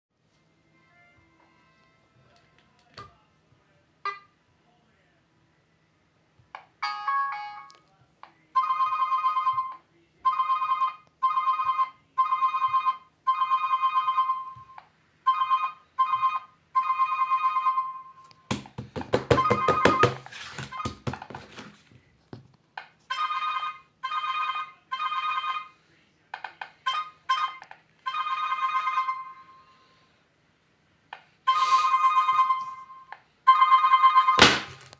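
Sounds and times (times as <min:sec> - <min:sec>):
electronic alarm beeping: 0:31.5 - 0:32.9.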